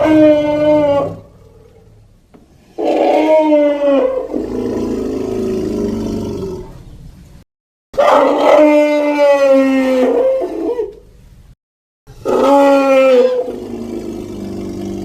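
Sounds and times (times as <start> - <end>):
creature roaring: 0.0 - 1.4, 2.8 - 6.8, 12.2 - 15.0
low growl: 4.0 - 6.9, 12.2 - 15.0.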